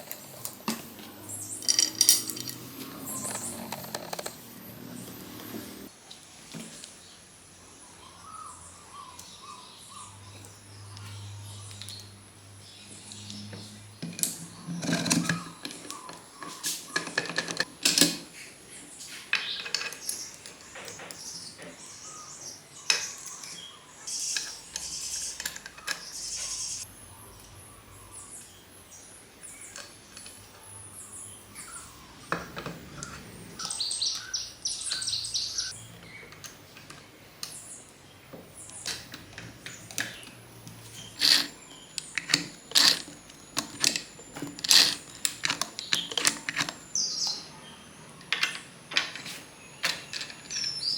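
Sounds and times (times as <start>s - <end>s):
metal tools clinking: 0.0s - 5.9s, 38.9s - 47.2s, 48.3s - 50.9s.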